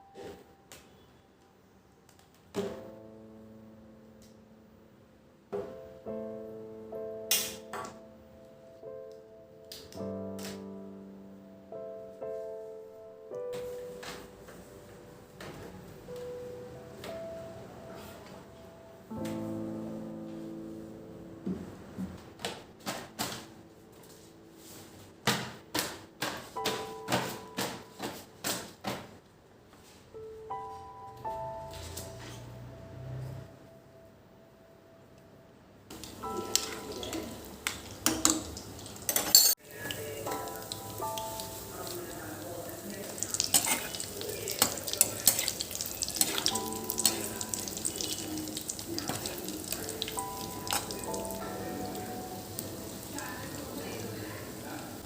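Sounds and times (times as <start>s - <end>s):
utensils clinking and knocking: 38.0s - 39.6s.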